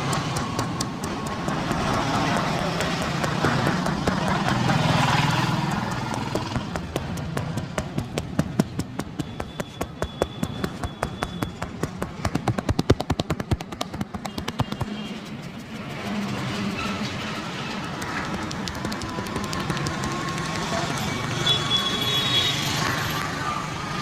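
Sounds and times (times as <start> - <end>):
hands slapping and tapping on body: 0.0 - 15.0, 17.9 - 20.8.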